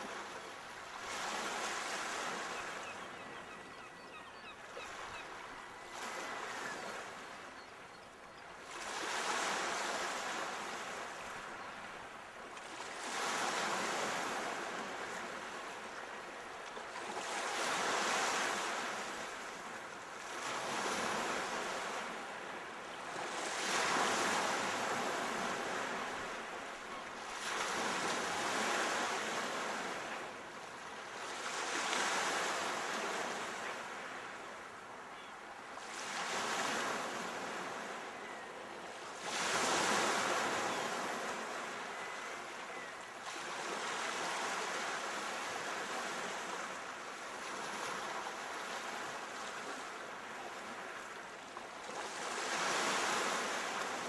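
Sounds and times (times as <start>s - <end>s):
sea waves breaking on shore: 0.0s - 54.0s.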